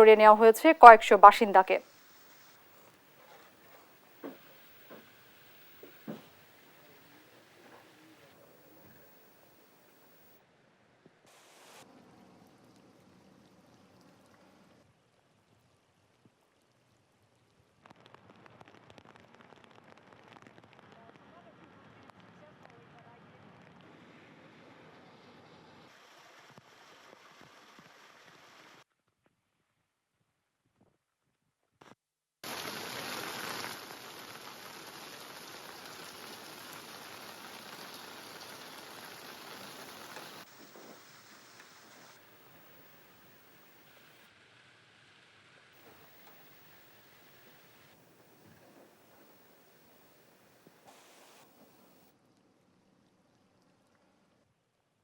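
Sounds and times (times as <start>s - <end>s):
rain drops spattering on a surface: 2.4s - 10.4s, 32.4s - 44.2s, 45.8s - 52.0s
heavy rain falling: 32.4s - 44.2s.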